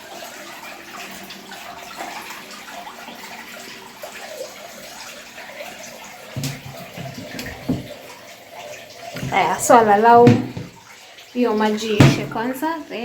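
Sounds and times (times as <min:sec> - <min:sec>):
water draining from washing machine: 0:00.0 - 0:13.0.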